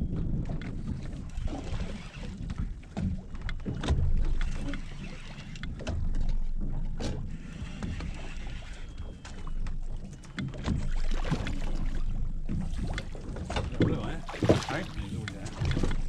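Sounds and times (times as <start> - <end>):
water slapping against boat hull: 0.0 - 16.0
knocks on boat: 12.4 - 16.0.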